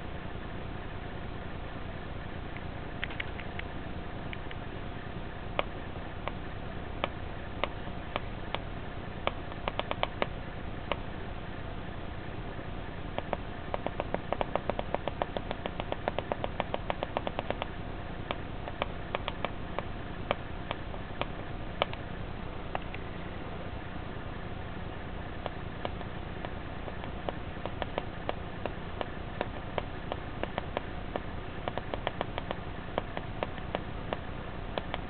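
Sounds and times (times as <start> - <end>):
steady electrical hum: 0.0 - 35.0
sharp electronic clicks: 7.0 - 11.0, 13.1 - 22.1, 25.4 - 35.0.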